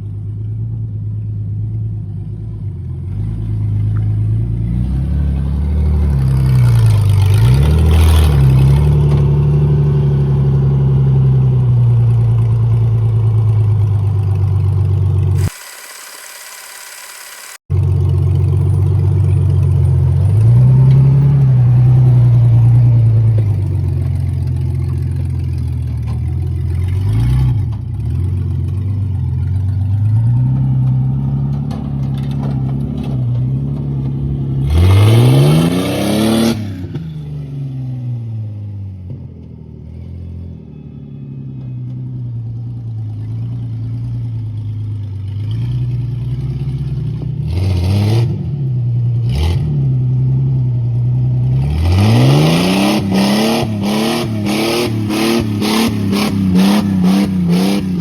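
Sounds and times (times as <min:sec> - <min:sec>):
car engine revving: 0:34.5 - 0:37.5, 0:51.5 - 0:58.0.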